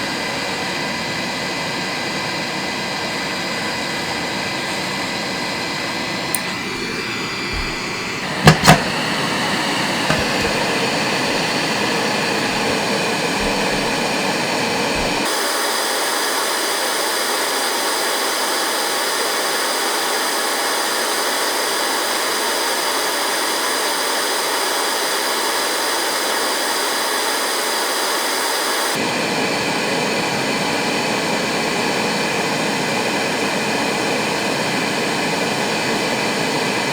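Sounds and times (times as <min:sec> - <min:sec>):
hot air gun fan blowing: 0:03.8 - 0:15.3.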